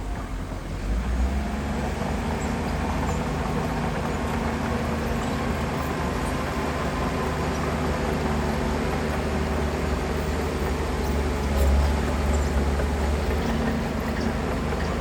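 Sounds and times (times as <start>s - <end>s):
heavy diesel engine rumbling: 0.0s - 15.0s.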